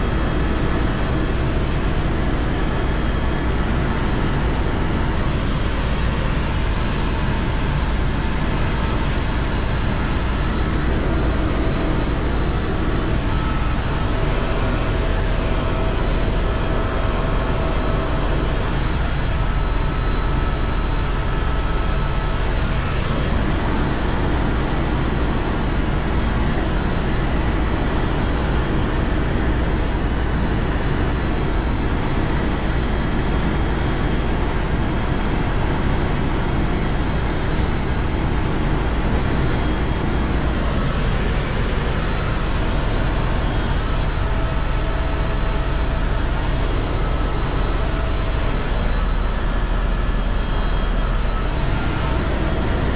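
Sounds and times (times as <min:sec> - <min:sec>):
faint steady whines: 0:00.0 - 0:52.9
helicopter rotor and turbine drone: 0:00.0 - 0:52.9.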